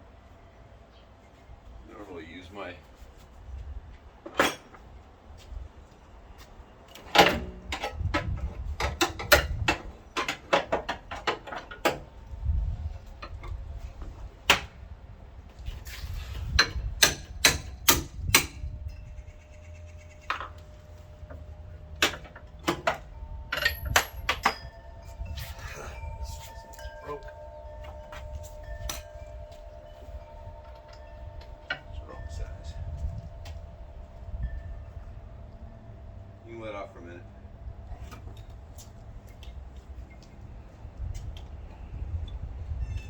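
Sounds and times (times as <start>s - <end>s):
metallic clinks of hand tools: 22.0s - 32.8s.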